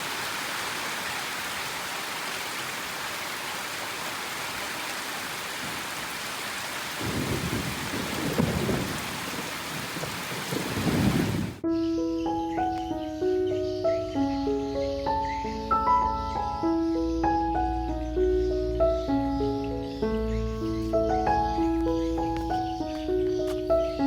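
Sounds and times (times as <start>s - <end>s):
heavy rain: 0.0s - 11.6s
thunder rumbling: 7.0s - 11.6s.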